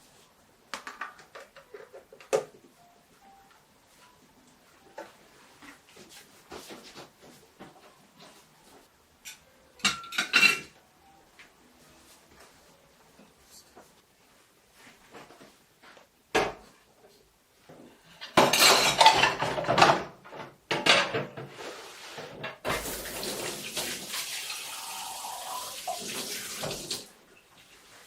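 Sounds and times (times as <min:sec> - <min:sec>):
dishes and cutlery clinking: 0:09.2 - 0:10.8, 0:18.1 - 0:21.6
tap water splashing: 0:25.9 - 0:27.0.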